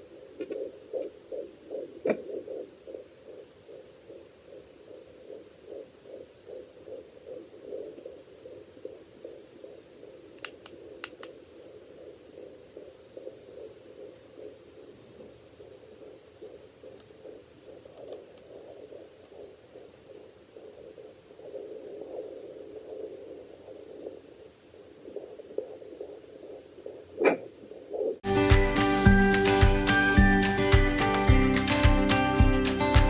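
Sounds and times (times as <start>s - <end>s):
fetal heartbeat pulsing whoosh: 0.0s - 33.0s
sharp click: 10.4s - 11.4s.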